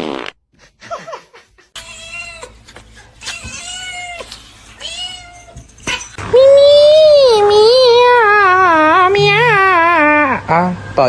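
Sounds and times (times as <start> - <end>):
cat meowing: 1.8 - 2.6, 3.2 - 10.2.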